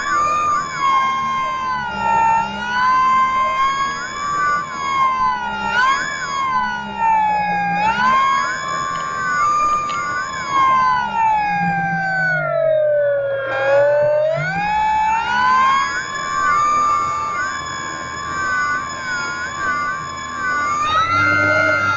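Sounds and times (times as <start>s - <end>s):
model plane electric motor whining: 0.0s - 21.9s.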